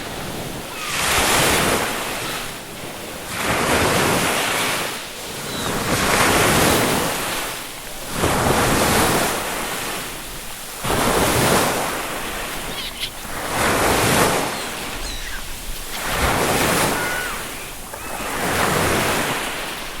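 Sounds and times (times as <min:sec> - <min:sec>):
ocean waves breaking: 0:00.0 - 0:20.0
seagull calls: 0:00.7 - 0:01.2, 0:05.3 - 0:06.1, 0:11.8 - 0:19.6.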